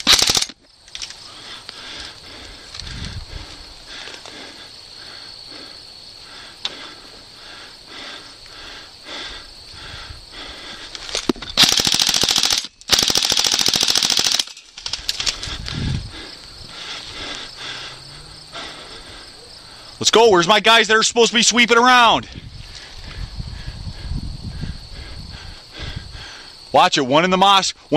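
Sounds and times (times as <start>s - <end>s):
airsoft gun full-auto bursts: 0.0s - 0.6s, 11.6s - 14.6s.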